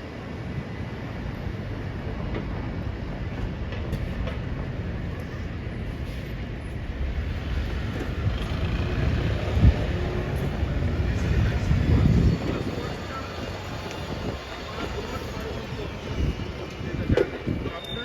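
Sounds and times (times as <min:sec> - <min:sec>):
train rumbling: 0:00.0 - 0:18.0.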